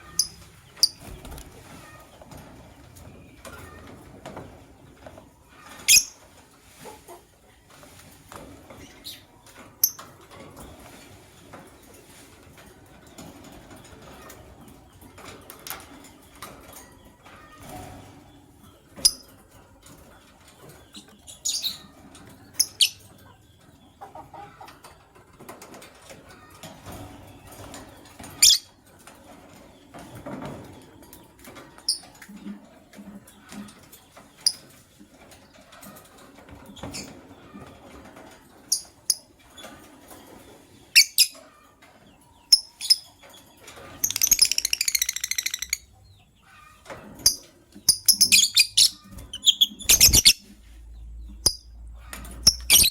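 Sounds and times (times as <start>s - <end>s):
wings flapping and rustling: 0.0s - 23.2s, 42.8s - 45.8s, 46.5s - 52.9s
birds chattering: 0.0s - 52.9s
birds chirping: 0.0s - 52.9s.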